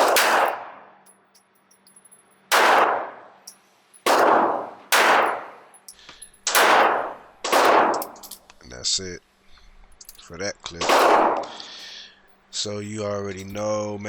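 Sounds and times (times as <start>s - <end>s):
pistol shots with echo: 0.0s - 1.0s, 2.5s - 3.4s, 4.0s - 5.7s, 6.4s - 8.3s, 10.8s - 11.7s.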